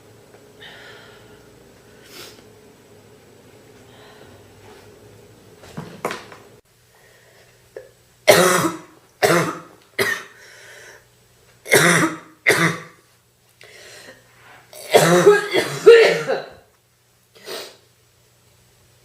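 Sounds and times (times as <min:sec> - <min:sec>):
girl coughing: 0:08.3 - 0:10.4, 0:11.7 - 0:13.0, 0:14.8 - 0:16.6.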